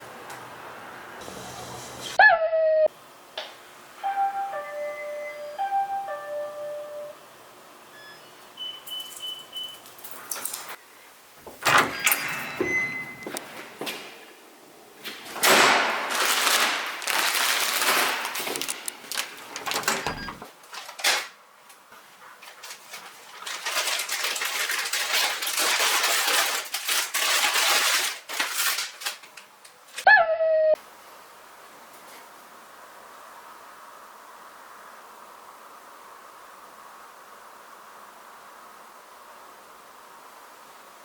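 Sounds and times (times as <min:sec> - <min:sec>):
rustling and handling noise: 0:15.0 - 0:30.0.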